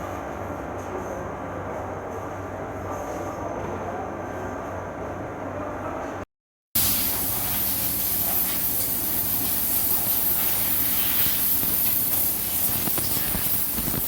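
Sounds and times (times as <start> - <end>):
pressure washer spraying water: 6.8 - 14.0.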